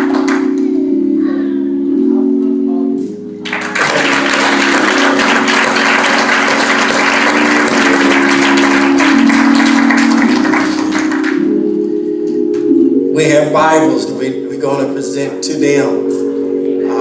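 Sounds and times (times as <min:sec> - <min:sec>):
congregation applauding: 0:00.0 - 0:00.6, 0:03.4 - 0:11.7
sustained keyboard chords: 0:00.0 - 0:17.0.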